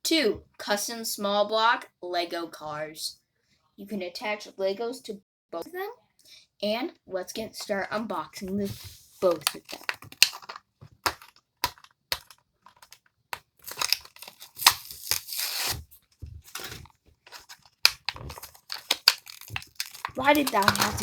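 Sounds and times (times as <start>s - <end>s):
blister packaging crinkling: 8.4s - 21.0s
packaging tearing: 9.2s - 21.0s.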